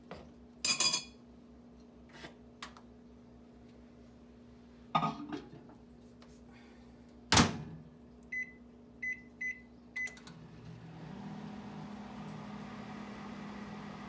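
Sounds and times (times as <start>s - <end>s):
microwave humming: 7.3s - 14.0s
short keypad beeps: 8.3s - 10.2s.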